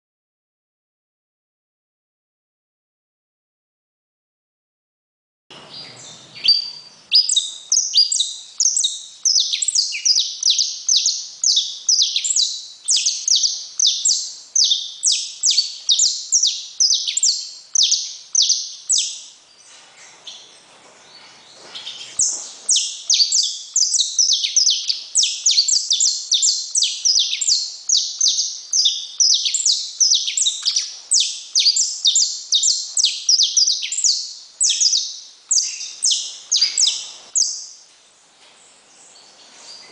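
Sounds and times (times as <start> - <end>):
finch singing: 5.6 - 37.8.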